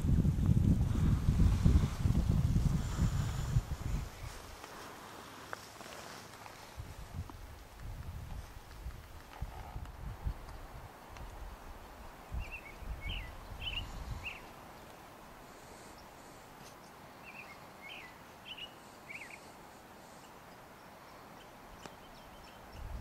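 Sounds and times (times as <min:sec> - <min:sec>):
faint outdoor background noise: 0:00.0 - 0:23.0
small bird chirping: 0:12.3 - 0:14.5.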